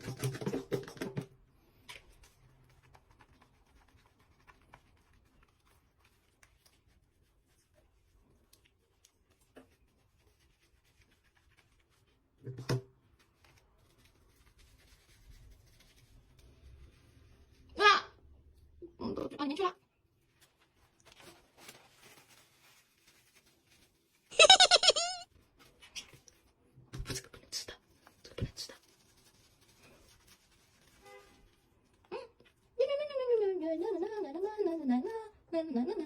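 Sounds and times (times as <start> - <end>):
faint scratching and rubbing: 2.1 - 12.4, 13.1 - 17.7, 20.2 - 24.3, 25.4 - 32.8.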